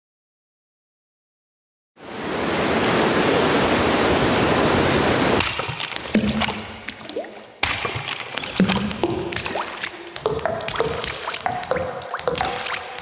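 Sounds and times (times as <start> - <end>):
rain hiss: 2.0 - 5.4
water drips and plinks: 5.2 - 13.0.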